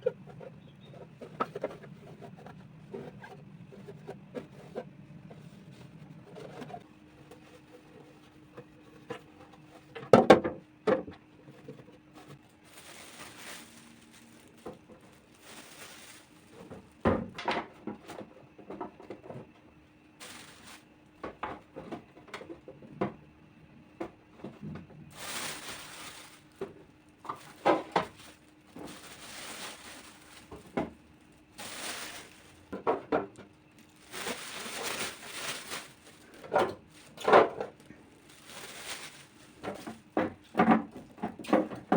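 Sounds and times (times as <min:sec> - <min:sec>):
faint low hum: 0:00.0 - 0:41.9
plastic containers being set down: 0:10.0 - 0:11.2, 0:12.2 - 0:19.4, 0:24.5 - 0:31.0, 0:31.6 - 0:41.9
rustling: 0:11.5 - 0:17.0, 0:20.2 - 0:20.9, 0:25.1 - 0:41.0.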